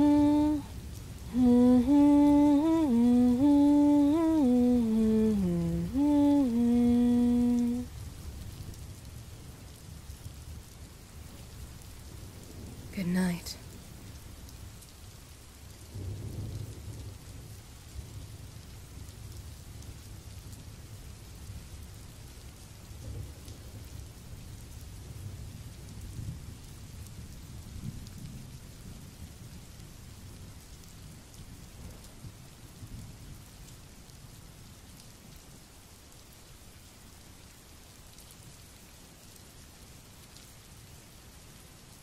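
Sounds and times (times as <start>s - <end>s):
heavy rain: 0.0s - 42.0s
low rolling thunder: 12.1s - 13.0s, 15.8s - 20.4s.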